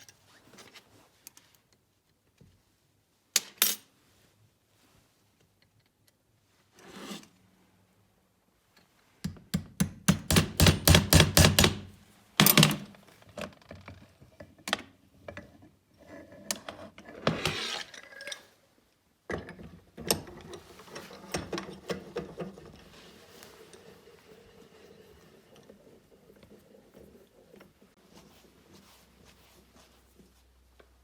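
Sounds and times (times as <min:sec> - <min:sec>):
metal scrape: 0:06.7 - 0:07.4, 0:17.1 - 0:18.5.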